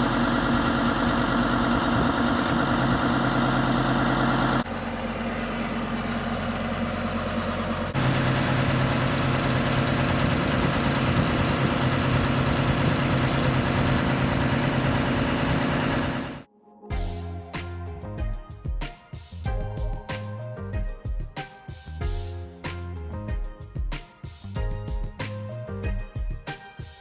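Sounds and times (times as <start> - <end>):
diesel tractor engine running: 0.0 - 16.5.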